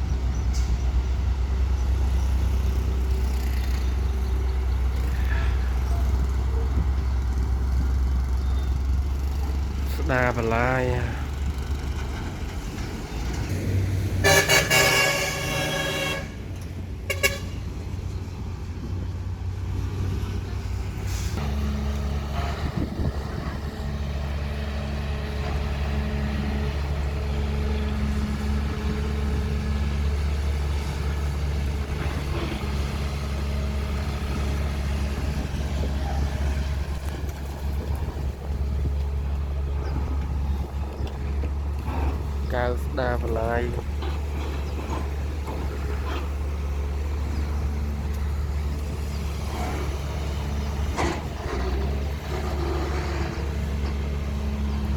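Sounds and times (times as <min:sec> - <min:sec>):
heavy diesel engine hum: 0:00.0 - 0:54.9
horn sounding: 0:14.2 - 0:16.4, 0:17.0 - 0:17.6.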